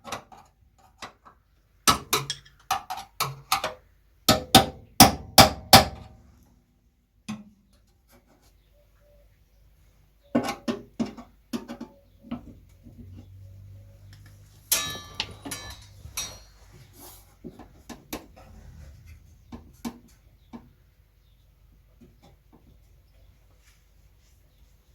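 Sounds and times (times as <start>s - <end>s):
metal scraping rattle: 14.1s - 20.8s
metal knocks and clanks: 14.6s - 20.8s.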